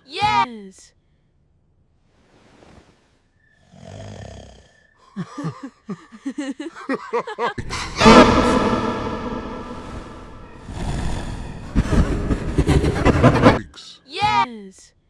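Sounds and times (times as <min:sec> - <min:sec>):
cartoon snore: 0:03.6 - 0:05.0, 0:09.5 - 0:13.7
loud raspy blast: 0:07.6 - 0:13.7.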